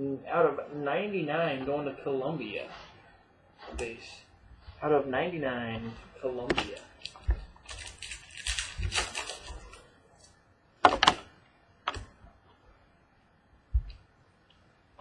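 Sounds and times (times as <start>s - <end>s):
cards rustling and sliding: 6.5s - 10.3s.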